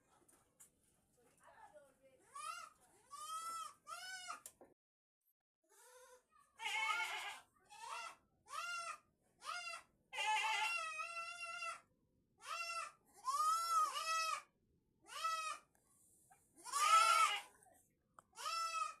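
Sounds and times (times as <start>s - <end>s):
goats bleating: 6.6s - 11.8s, 12.4s - 14.4s, 16.6s - 17.5s, 18.4s - 19.0s.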